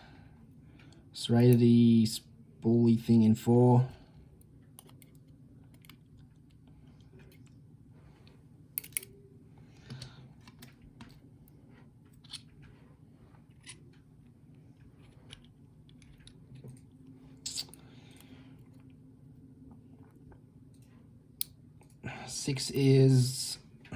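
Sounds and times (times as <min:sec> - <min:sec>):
metal lock pin clicks: 0:08.8 - 0:09.1.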